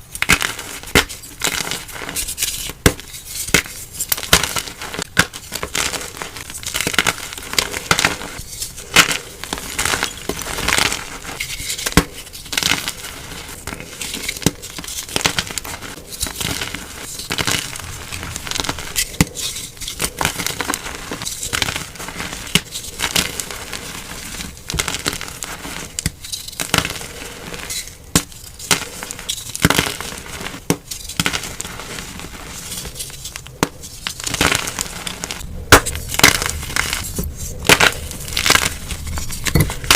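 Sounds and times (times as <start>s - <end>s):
chalk blocks crushed by hand: 33.6s - 39.9s.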